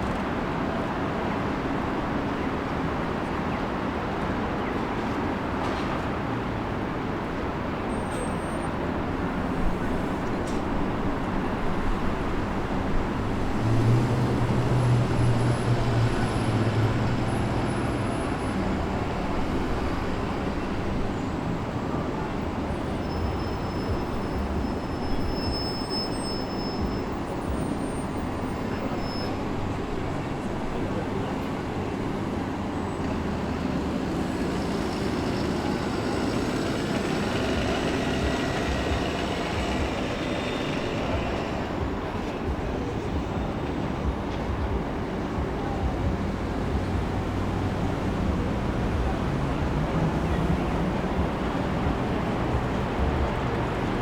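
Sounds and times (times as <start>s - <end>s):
traffic noise: 0.0s - 54.0s
low engine hum: 27.2s - 54.0s.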